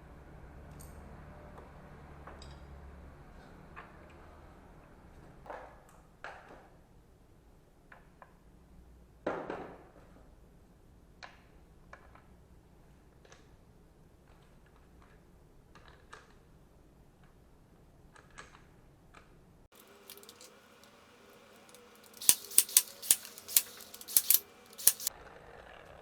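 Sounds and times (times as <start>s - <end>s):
sharp metallic clicks and clinks: 19.8s - 20.6s, 21.6s - 25.1s.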